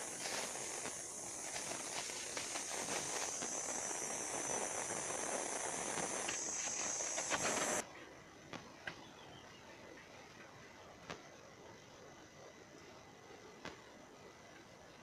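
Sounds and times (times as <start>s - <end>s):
rustling: 0.0s - 3.8s, 4.8s - 7.8s
steady high-pitched hiss: 0.0s - 15.0s.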